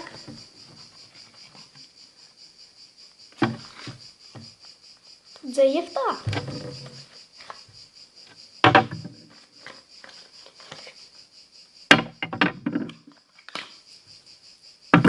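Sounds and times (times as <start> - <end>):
knocks and clattering handling: 3.4 - 4.6, 6.2 - 7.6, 8.6 - 11.0, 11.9 - 13.8.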